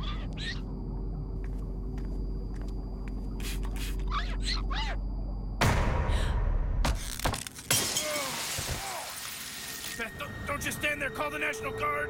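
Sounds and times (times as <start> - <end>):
steady low rumble: 0.0 - 6.3.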